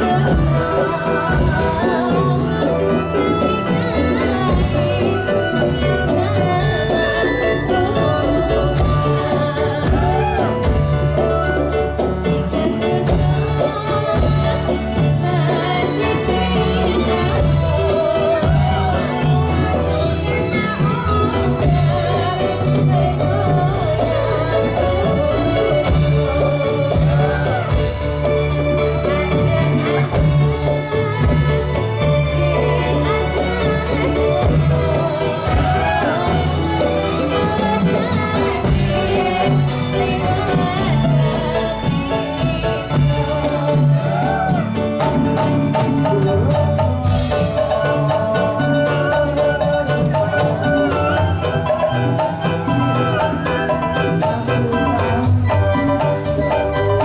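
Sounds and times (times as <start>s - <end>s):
person singing: 0.0s - 57.0s
steady drum beat: 0.0s - 57.0s.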